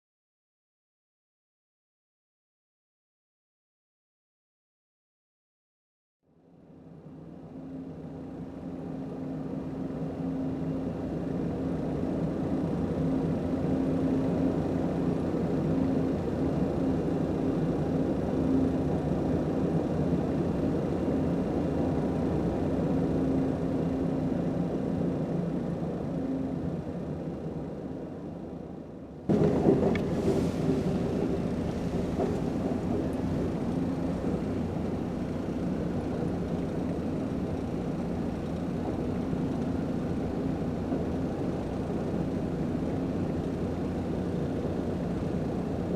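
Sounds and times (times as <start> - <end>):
passenger train rumbling: 7.9 - 45.9.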